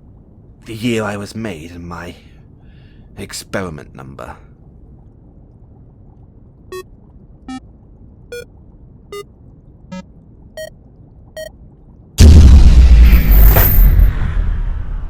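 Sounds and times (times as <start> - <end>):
low steady hum: 0.0 - 15.0
loud boom: 12.2 - 15.0.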